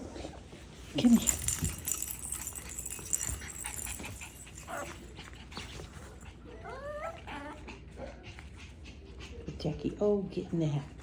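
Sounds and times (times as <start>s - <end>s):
puppy whining: 1.0s - 9.6s.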